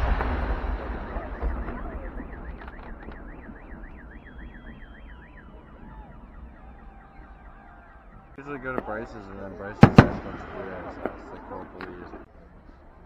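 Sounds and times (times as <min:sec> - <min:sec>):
fireworks rumble: 0:00.0 - 0:12.3
faint alarm tones: 0:01.9 - 0:08.4
car alarm warbling: 0:02.0 - 0:08.4.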